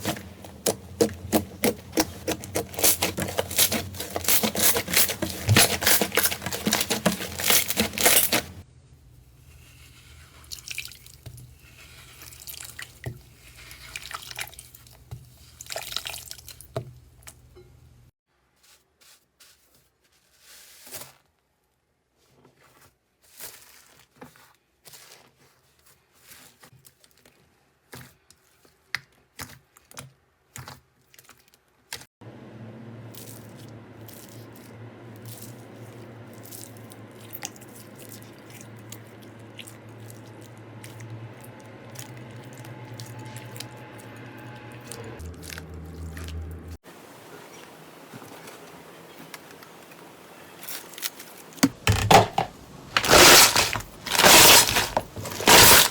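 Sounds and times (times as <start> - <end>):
slime crunchy crackles: 0.0 - 8.6, 52.9 - 55.9.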